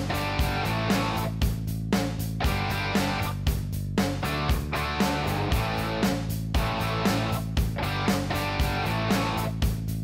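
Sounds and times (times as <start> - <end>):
guitar music with steady beat: 0.0 - 10.0.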